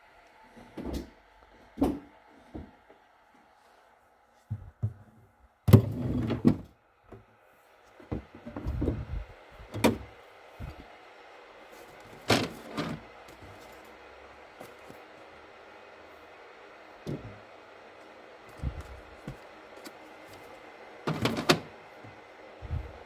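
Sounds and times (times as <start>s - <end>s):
kitchen items clattering: 21.1s - 21.7s.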